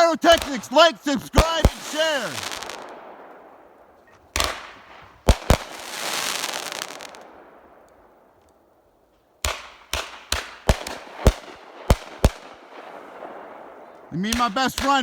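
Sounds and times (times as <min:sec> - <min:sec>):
fireworks crackling hiss: 0:00.0 - 0:03.3, 0:04.4 - 0:07.3
fireworks bangs: 0:00.0 - 0:07.7, 0:09.4 - 0:15.0.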